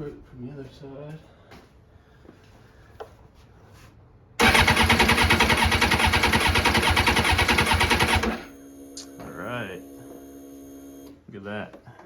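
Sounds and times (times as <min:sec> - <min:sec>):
electric starter cranking engine: 0:04.4 - 0:09.1.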